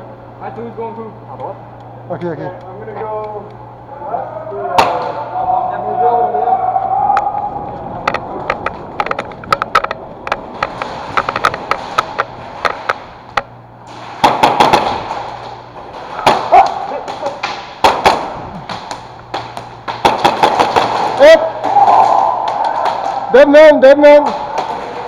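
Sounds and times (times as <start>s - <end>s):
airsoft gunfire cracks: 14.0s - 23.3s.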